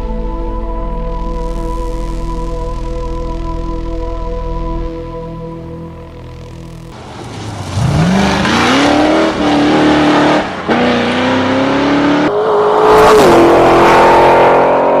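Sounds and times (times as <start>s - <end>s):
car engine revving: 6.0s - 15.0s.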